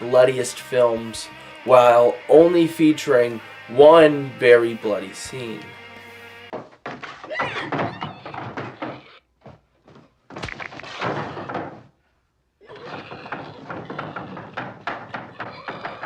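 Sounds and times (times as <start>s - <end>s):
knocks and thuds: 6.5s - 12.0s, 12.8s - 16.0s.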